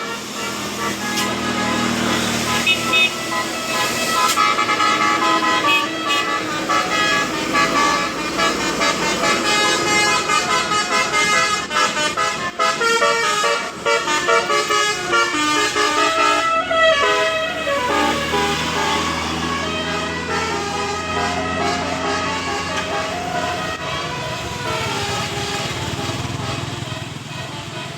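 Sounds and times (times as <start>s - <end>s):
multi-tone bus horn melody: 0.0s - 27.9s.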